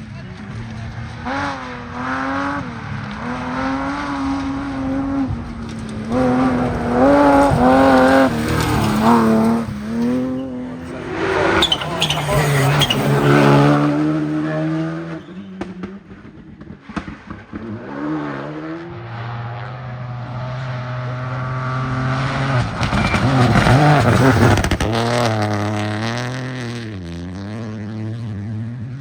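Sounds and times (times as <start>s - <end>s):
rally car engine revving: 0.0s - 29.0s
exhaust cracks: 5.3s - 17.7s, 22.5s - 27.4s.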